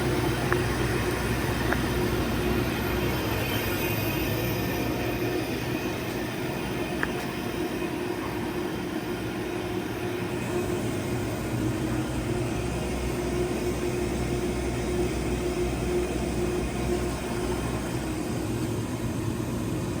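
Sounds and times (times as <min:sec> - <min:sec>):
machine hum with low rumble: 0:00.0 - 0:20.0.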